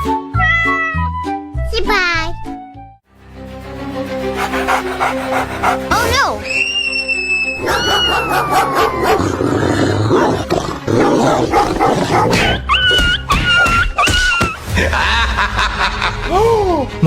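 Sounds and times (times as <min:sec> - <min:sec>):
dog growling and barking: 0:04.3 - 0:06.1, 0:07.6 - 0:12.7
dog whining: 0:07.6 - 0:09.5.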